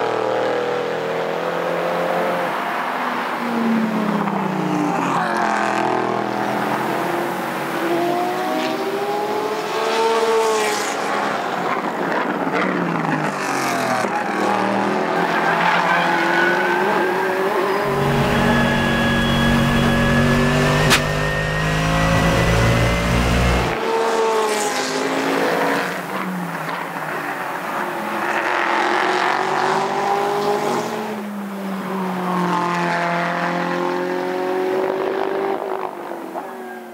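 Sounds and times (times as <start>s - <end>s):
race cars passing at speed: 0.0s - 36.9s
deep steady engine rumble: 17.8s - 23.8s
sharp click: 20.8s - 21.2s.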